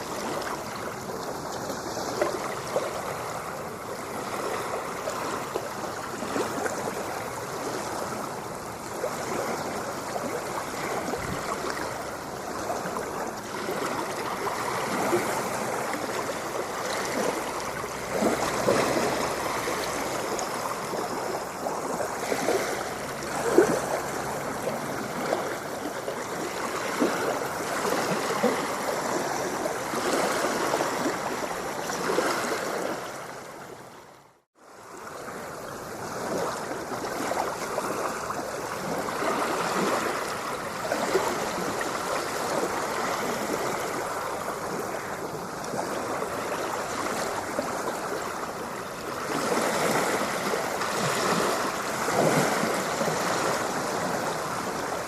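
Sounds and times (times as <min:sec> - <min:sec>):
small water splashes: 0:00.0 - 0:34.1, 0:34.7 - 0:55.0
shallow water gurgling and lapping: 0:00.0 - 0:55.0.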